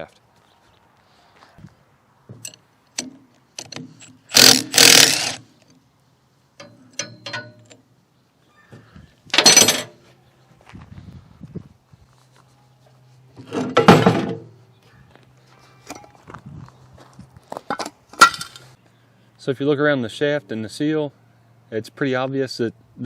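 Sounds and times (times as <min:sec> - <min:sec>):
bursts of metal noise: 0:03.9 - 0:05.4
metal clicks and knocks: 0:06.6 - 0:07.8, 0:09.3 - 0:10.0.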